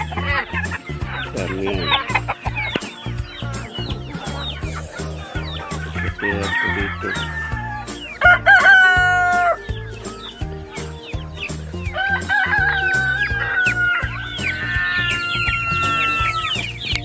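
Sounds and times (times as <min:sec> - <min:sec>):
background music: 0:00.0 - 0:17.0
chickens clucking: 0:00.0 - 0:17.0
rooster crowing: 0:04.6 - 0:09.7, 0:11.9 - 0:16.7.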